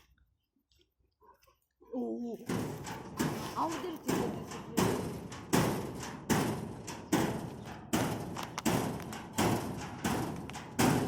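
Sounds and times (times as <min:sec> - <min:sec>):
bear banging on cage: 0:02.5 - 0:11.0.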